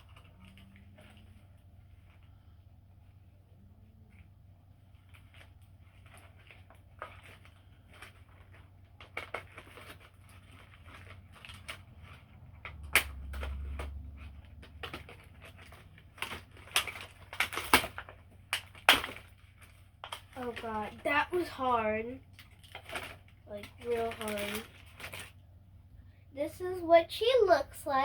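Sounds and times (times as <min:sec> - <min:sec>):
packaging crackling: 0:04.8 - 0:25.5
sharp plastic snaps: 0:05.3 - 0:20.8.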